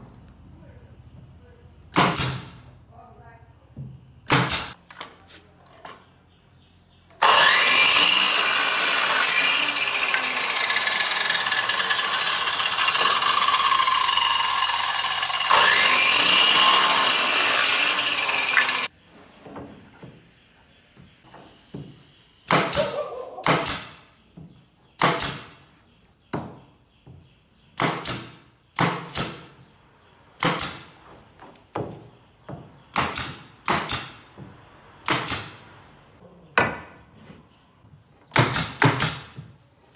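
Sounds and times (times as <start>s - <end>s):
power tool cutting wood: 7.2s - 18.9s
sharp blows on wood: 22.5s - 24.0s, 25.0s - 25.6s, 27.8s - 29.6s, 30.4s - 31.0s, 32.9s - 34.3s, 35.0s - 35.6s.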